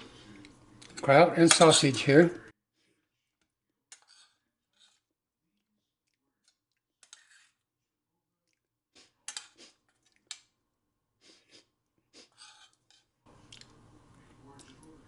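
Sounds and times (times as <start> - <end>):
serving utensil scraping and clinking: 3.9 - 5.0, 7.0 - 7.6, 12.2 - 13.1.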